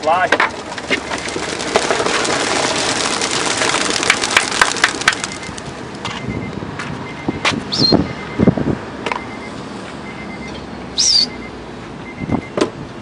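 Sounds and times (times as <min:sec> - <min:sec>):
pigeons flapping wings: 0:00.0 - 0:06.0.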